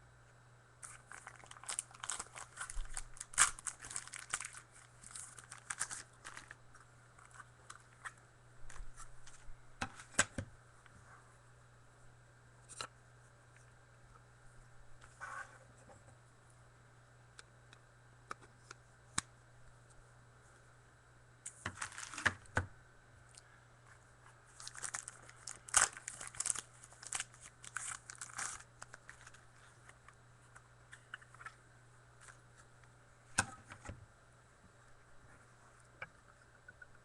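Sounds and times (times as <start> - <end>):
faint low hum: 0.0 - 37.0
plastic crinkling and rustling: 0.8 - 10.2, 21.5 - 22.5, 24.5 - 31.6.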